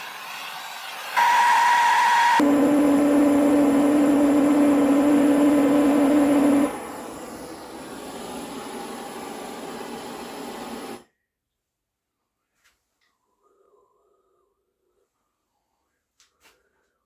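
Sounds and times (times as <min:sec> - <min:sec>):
power tool humming: 0:01.2 - 0:11.0
steady whir: 0:01.2 - 0:11.0.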